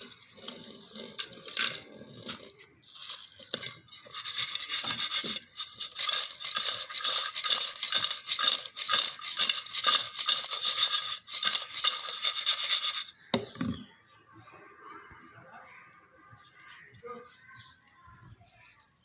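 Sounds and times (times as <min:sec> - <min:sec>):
rapid rhythmic scraping: 0:00.0 - 0:13.8.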